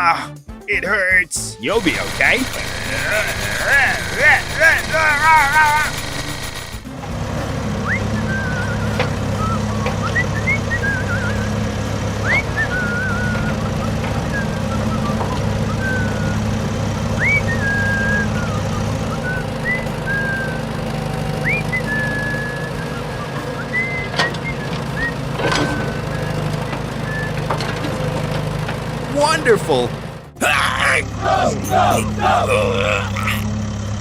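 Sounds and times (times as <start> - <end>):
low motor drone: 1.8 - 34.0
high chirping whistles: 7.8 - 27.5.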